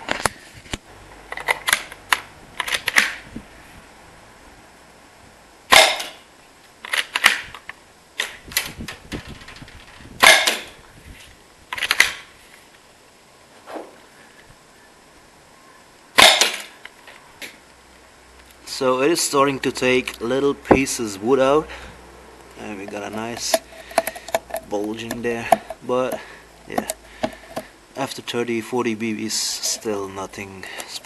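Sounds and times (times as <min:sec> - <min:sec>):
airsoft rifle shots: 0:02.6 - 0:03.2, 0:05.7 - 0:06.2, 0:06.9 - 0:07.5, 0:10.2 - 0:10.8, 0:11.8 - 0:12.3, 0:16.2 - 0:16.7
pellets hitting wood: 0:22.8 - 0:27.7.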